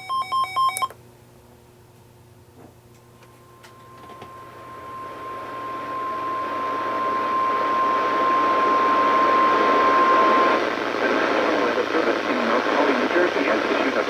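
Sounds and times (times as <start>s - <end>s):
steady warning alarm tone: 3.3s - 10.8s
radio static: 3.6s - 14.0s
synthesized voice: 11.0s - 14.0s.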